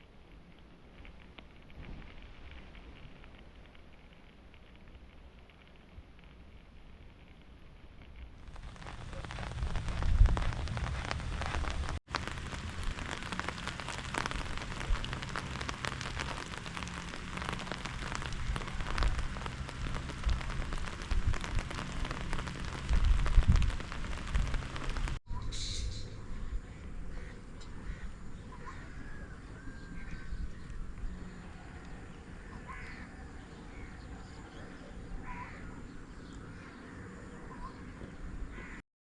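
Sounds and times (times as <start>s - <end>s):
rain falling: 0.0s - 25.2s
low rumbles: 6.9s - 25.2s.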